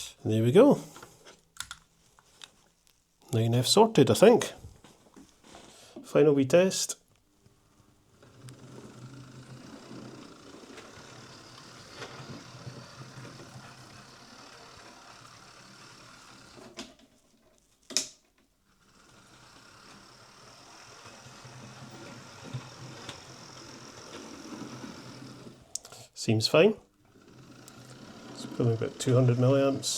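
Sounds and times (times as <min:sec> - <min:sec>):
model train motor whirring: 0:07.8 - 0:17.1, 0:18.7 - 0:25.8, 0:26.9 - 0:29.9.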